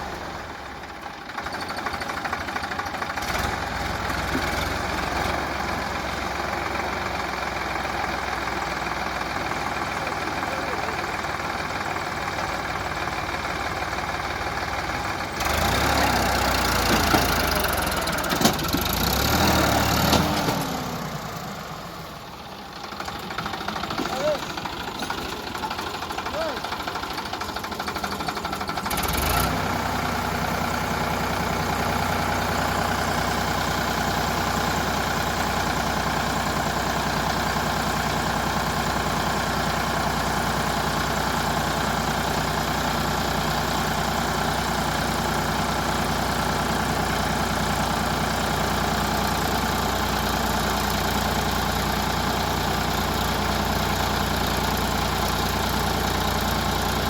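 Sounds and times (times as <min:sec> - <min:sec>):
heavy diesel engine running: 0:00.0 - 0:57.0
engine knock: 0:00.2 - 0:57.0.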